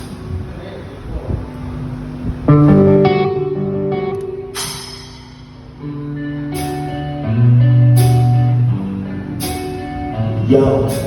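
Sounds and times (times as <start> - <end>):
guitar and bass chords: 1.6 - 11.0
cymbal crashes: 4.4 - 6.0.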